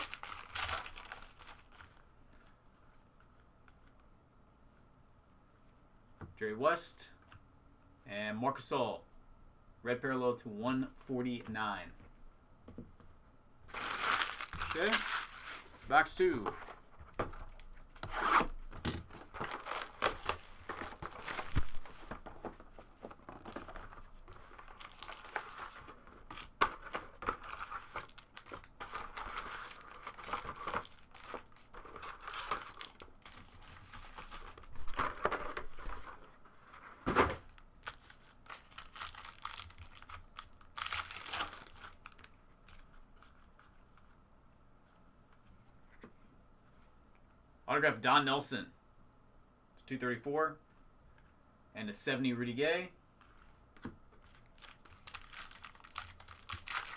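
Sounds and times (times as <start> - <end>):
wrappers tearing and crinkling: 0.0 - 2.1, 13.7 - 15.8, 18.2 - 22.0, 23.3 - 35.2, 37.4 - 42.8, 54.3 - 56.9.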